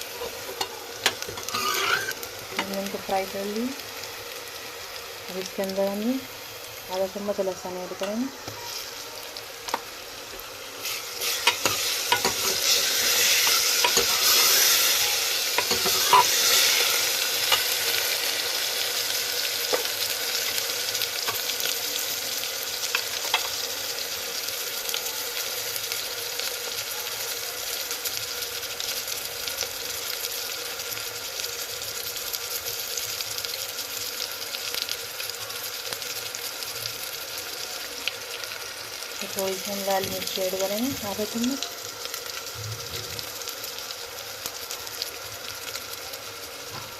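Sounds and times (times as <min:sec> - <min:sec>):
food sizzling in hot oil: 0:00.0 - 0:46.9
spoon scraping a pan: 0:00.2 - 0:02.8, 0:10.8 - 0:17.8.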